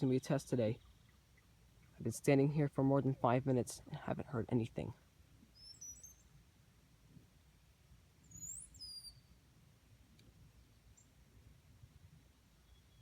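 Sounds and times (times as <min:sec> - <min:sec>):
faint bird chirps: 0:00.0 - 0:02.0, 0:05.5 - 0:06.4, 0:08.2 - 0:09.5, 0:12.4 - 0:13.0
bird chirping call sweeping: 0:08.2 - 0:09.3.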